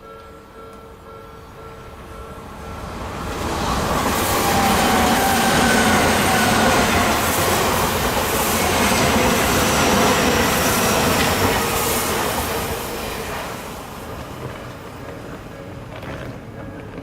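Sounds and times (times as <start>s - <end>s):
electric train passing: 0.0s - 17.0s
wheel clatter over rail joints: 14.3s - 17.0s.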